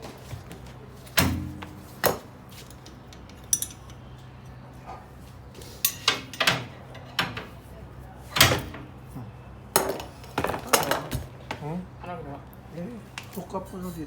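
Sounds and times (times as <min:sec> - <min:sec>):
steady low hum: 0:00.0 - 0:06.8
metal hand tools clanking: 0:01.2 - 0:04.0, 0:05.8 - 0:07.2.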